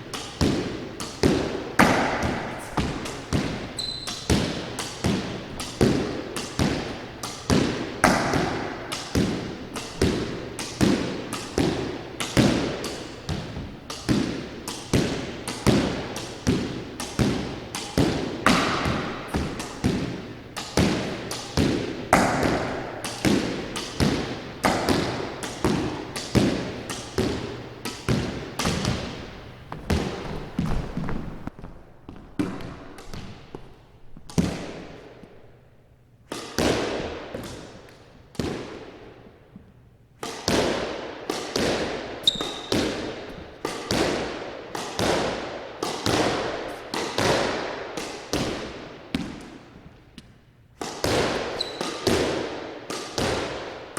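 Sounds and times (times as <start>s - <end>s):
squash ball struck by racket: 0.0s - 35.7s, 36.3s - 39.3s, 40.2s - 53.9s
ball rebounding off court wall: 0.1s - 35.0s.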